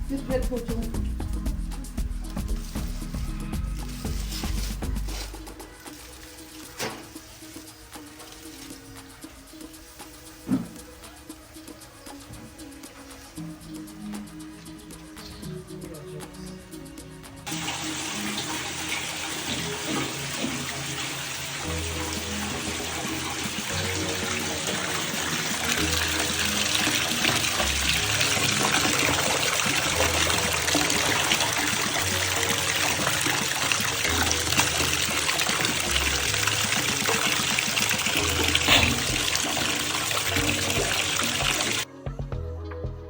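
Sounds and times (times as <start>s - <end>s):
background music with bass line: 0.0s - 43.0s
running water rushing: 17.5s - 41.9s.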